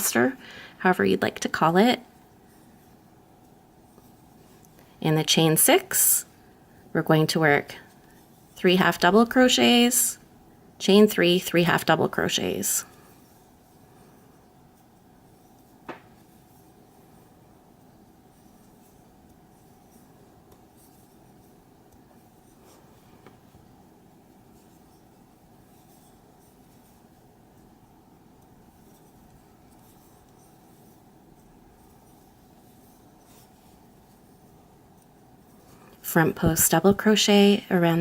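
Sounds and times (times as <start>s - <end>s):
faint steady hum: 0.0s - 38.0s
yarn rustling and scraping: 12.2s - 36.8s.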